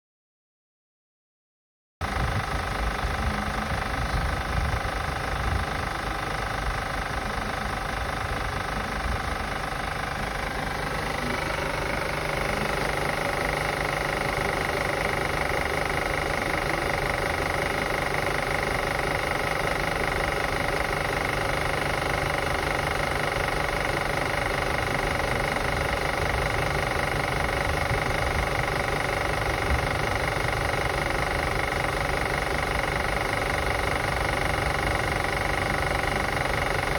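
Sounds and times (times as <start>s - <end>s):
car engine running: 2.0s - 36.9s
engine clicking: 2.0s - 36.9s
steady high whine: 2.0s - 36.9s.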